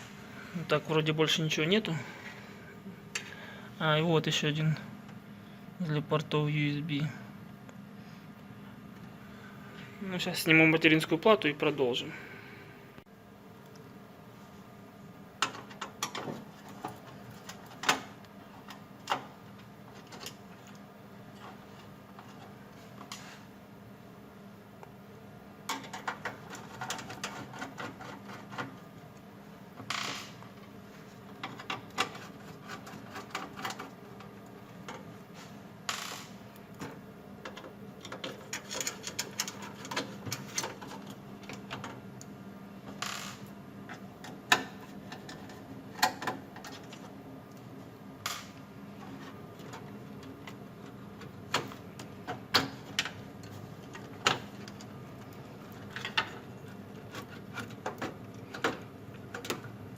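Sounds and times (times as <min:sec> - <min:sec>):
faint steady hum: 0:00.0 - 0:59.9
screws and parts clicking and clattering: 0:25.7 - 0:28.8, 0:31.4 - 0:34.0, 0:37.4 - 0:42.0.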